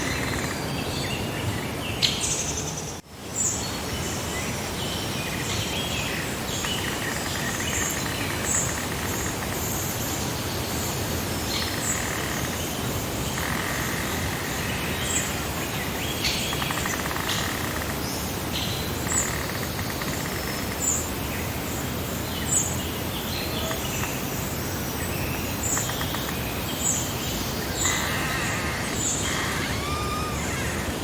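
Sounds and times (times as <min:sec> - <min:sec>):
steady background hiss: 0:00.0 - 0:31.0
buzzy pulsed bird calls: 0:22.5 - 0:31.0
high bird chirps: 0:27.6 - 0:31.0.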